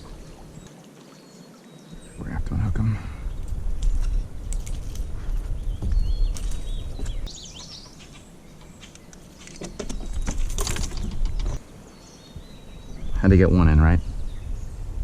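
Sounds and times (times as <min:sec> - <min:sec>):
bird chirping: 0:00.0 - 0:14.9
low wind rumble: 0:01.9 - 0:15.0
clicks and rustling: 0:08.6 - 0:11.6.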